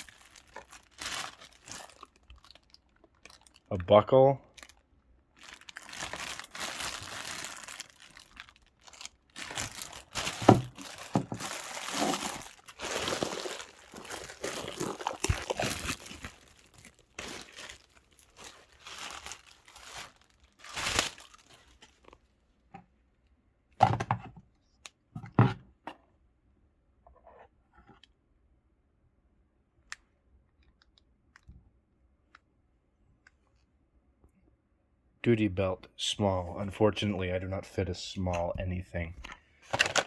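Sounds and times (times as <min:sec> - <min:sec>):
packaging crinkling and rustling: 0:00.0 - 0:03.9, 0:04.5 - 0:22.3, 0:39.6 - 0:40.0.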